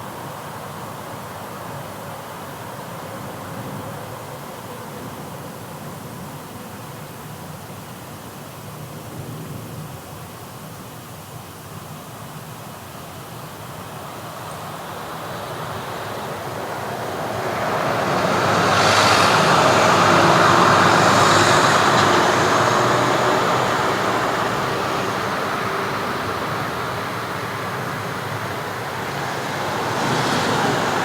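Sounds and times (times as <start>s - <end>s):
street traffic: 13.4s - 31.0s
vehicle passing close by: 14.2s - 31.0s.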